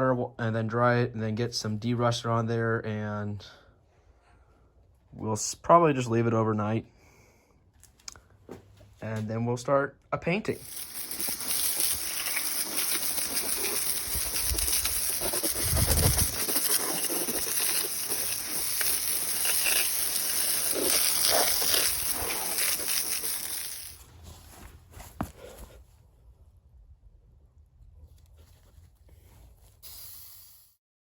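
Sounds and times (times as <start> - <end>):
spray hissing onto metal: 10.6 - 24.0, 29.8 - 30.8.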